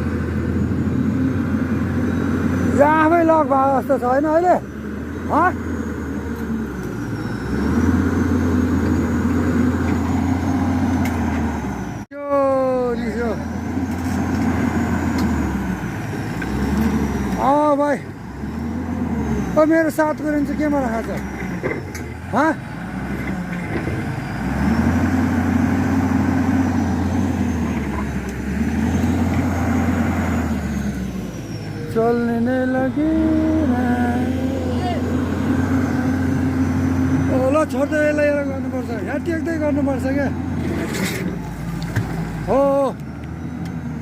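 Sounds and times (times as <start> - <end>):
excavator diesel engine running: 0.0 - 44.0.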